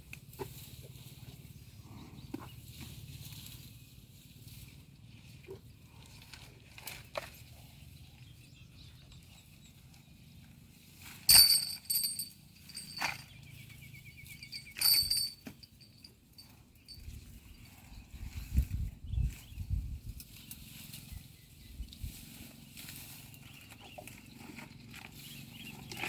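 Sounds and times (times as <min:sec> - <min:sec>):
sharp ringing clinks: 0:11.3 - 0:17.4.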